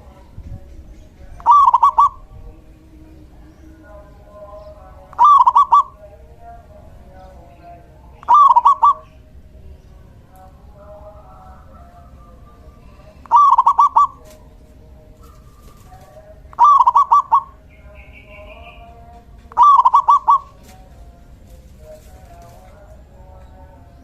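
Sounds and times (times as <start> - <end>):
faint bird calls: 0.0 - 6.1, 8.1 - 10.0, 12.0 - 14.6, 15.2 - 20.9
dove cooing: 1.4 - 2.4, 5.1 - 6.0, 8.2 - 9.2, 12.8 - 18.7, 19.5 - 20.9.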